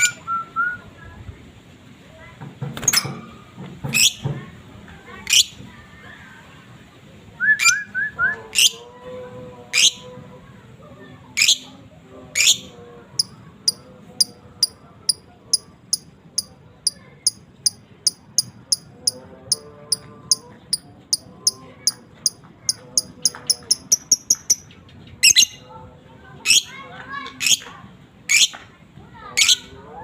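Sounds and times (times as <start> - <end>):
songbird chirping: 12.4 - 25.6.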